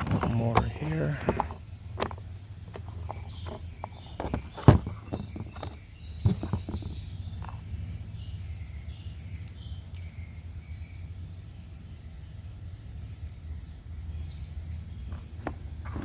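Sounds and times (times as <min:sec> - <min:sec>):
plastic parts knocking and clicking: 0:00.0 - 0:07.6, 0:15.1 - 0:16.0.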